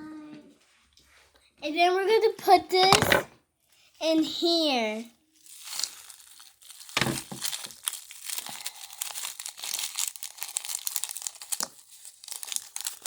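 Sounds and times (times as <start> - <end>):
packaging crinkling: 5.4 - 13.0.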